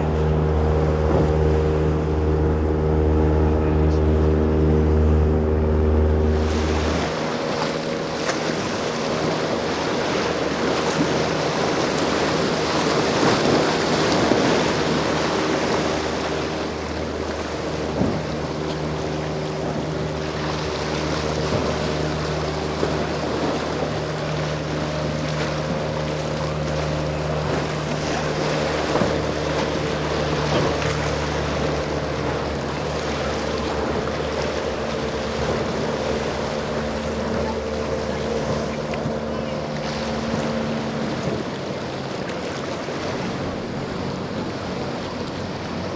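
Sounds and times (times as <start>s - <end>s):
motorboat engines running: 0.0s - 45.9s
waves crashing: 0.0s - 45.9s.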